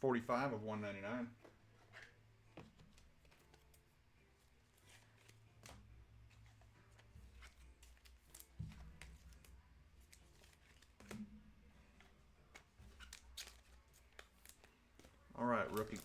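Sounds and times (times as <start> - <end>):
trading cards clicking and sliding: 4.6 - 16.0.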